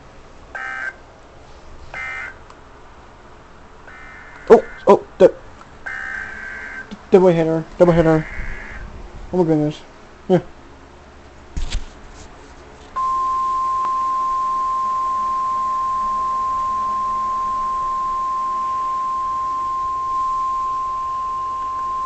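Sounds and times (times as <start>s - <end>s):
steady alarm tone: 5.9s - 6.9s, 13.0s - 22.0s.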